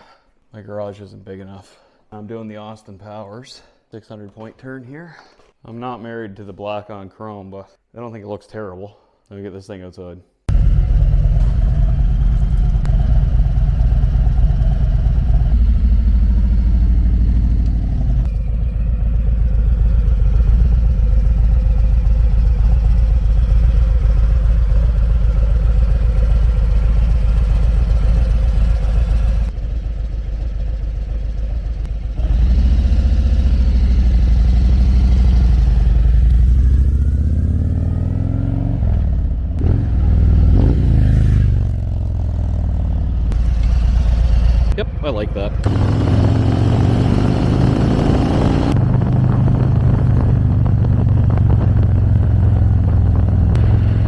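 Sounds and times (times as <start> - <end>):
motorcycle exhaust revving: 10.5 - 44.8, 45.5 - 54.0.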